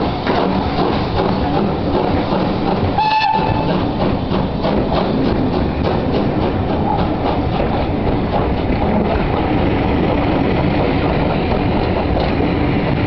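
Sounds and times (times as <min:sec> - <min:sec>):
train wheels rumbling on rails: 0:00.0 - 0:13.0.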